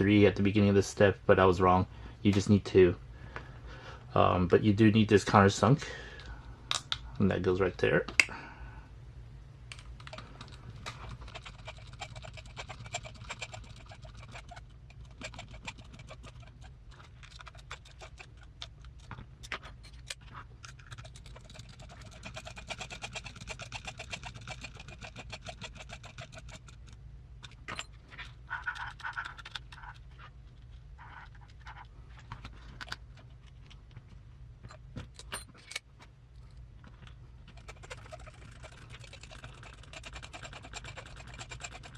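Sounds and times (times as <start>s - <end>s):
steady low hum: 0.0s - 41.9s
small metal parts clicking and rattling: 9.7s - 33.8s, 34.6s - 41.9s.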